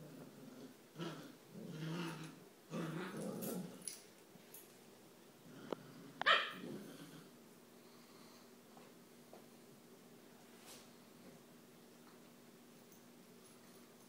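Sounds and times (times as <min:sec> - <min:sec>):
puppies play-growling: 0:00.0 - 0:04.0, 0:05.4 - 0:07.4
puppy yelping: 0:06.2 - 0:06.6.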